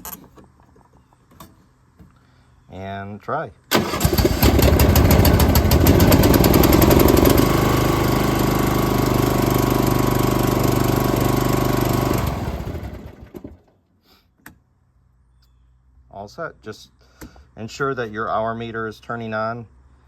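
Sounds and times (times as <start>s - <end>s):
engine winding down: 3.7s - 13.6s
mower engine running: 3.7s - 13.6s.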